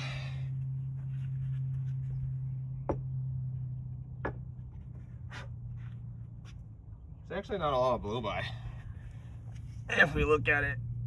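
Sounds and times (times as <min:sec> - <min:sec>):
low hum: 0:00.0 - 0:07.2.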